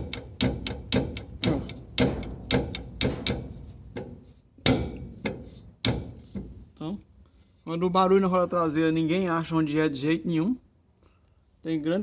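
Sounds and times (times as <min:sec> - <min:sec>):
loose part knocking: 0:00.0 - 0:06.6.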